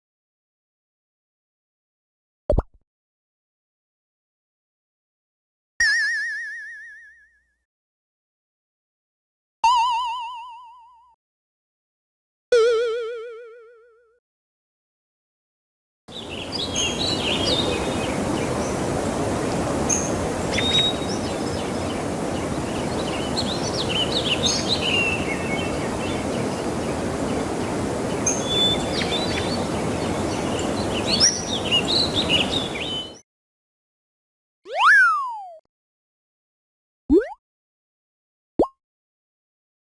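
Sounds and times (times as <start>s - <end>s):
birds chirping and calling: 16.1s - 33.2s
steady rushing noise: 16.2s - 32.9s.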